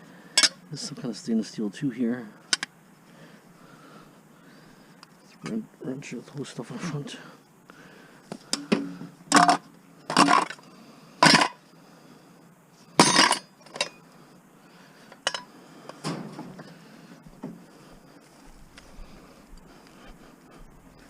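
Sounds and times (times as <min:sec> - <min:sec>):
scrap metal clanking and crashing: 0:08.6 - 0:10.6, 0:11.2 - 0:11.6, 0:13.0 - 0:14.0.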